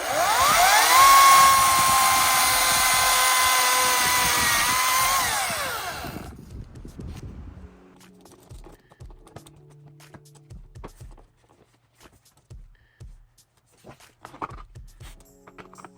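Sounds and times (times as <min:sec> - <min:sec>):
chainsaw motor whine: 0:00.0 - 0:06.3.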